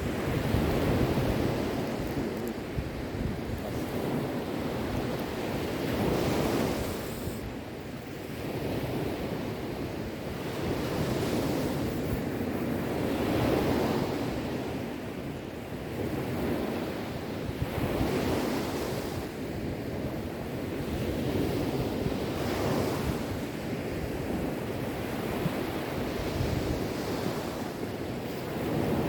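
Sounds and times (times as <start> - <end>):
sea waves washing onto shore: 0.0 - 19.5.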